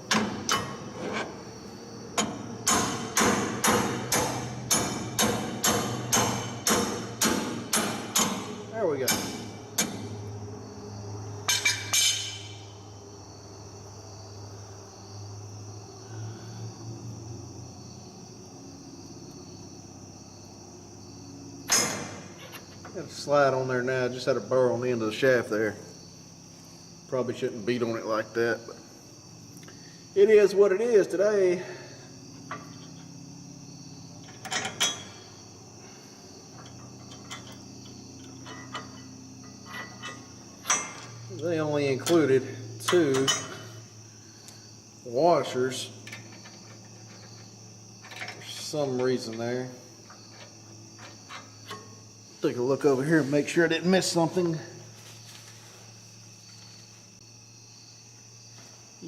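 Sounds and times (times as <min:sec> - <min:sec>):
crickets chirping: 0:00.0 - 0:59.0
metal tools knocking and clinking: 0:11.5 - 0:12.6, 0:32.4 - 0:33.1, 0:34.2 - 0:35.2, 0:36.5 - 0:41.3, 0:42.0 - 0:43.8, 0:46.0 - 0:49.1, 0:50.1 - 0:52.0.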